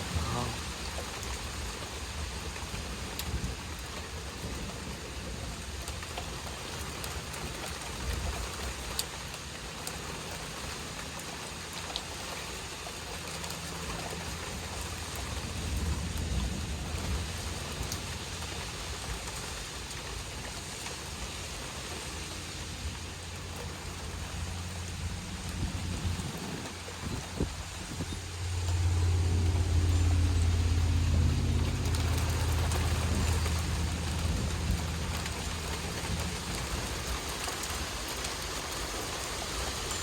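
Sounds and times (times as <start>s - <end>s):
steady rain falling: 0.0s - 40.0s
low rumble: 23.2s - 37.7s.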